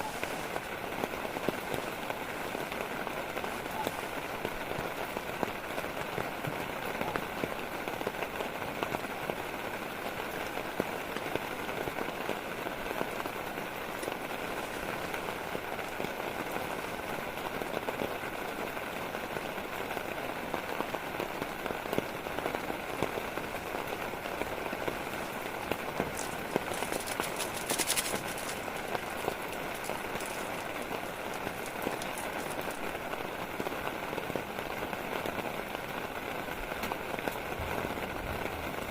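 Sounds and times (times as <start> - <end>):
heavy rain ticking on a surface: 0.0 - 38.9
sharp crackling ticks: 26.0 - 32.9.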